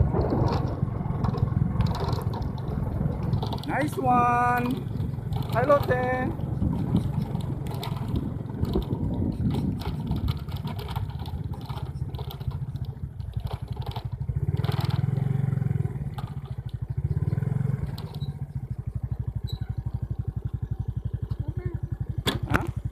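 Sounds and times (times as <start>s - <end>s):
small engine revving: 0.0s - 22.9s.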